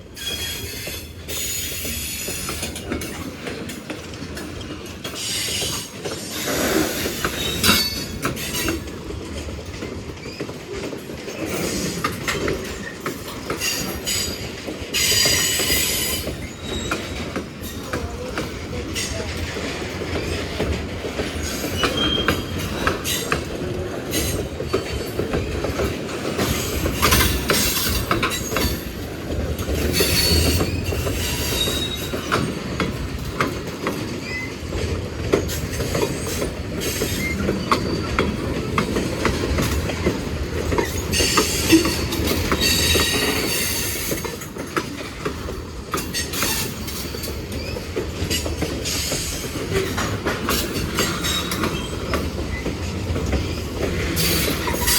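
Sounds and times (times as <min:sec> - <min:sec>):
freight train rumbling past: 0:00.0 - 0:54.9
wheels clacking over rail joints: 0:00.2 - 0:54.9
wheels squealing: 0:29.8 - 0:32.4.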